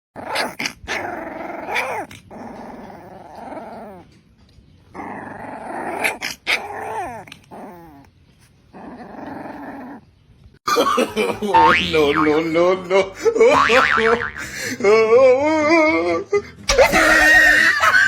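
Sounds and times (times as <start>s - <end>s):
puppy growling: 0.2s - 10.6s
puppy whining: 0.2s - 10.6s
puppy yipping: 1.6s - 4.0s.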